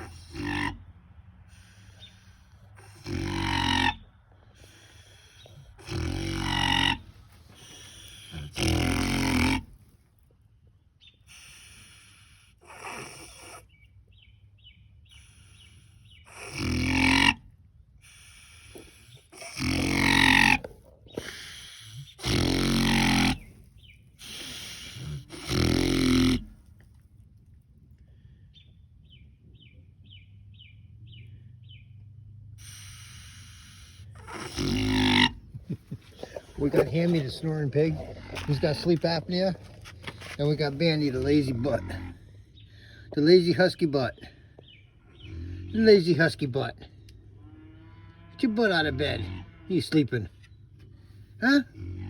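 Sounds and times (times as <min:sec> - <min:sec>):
pet snoring: 0:04.6 - 0:09.7, 0:12.6 - 0:13.6, 0:16.3 - 0:17.4, 0:18.1 - 0:23.5, 0:24.2 - 0:26.5, 0:36.0 - 0:42.2.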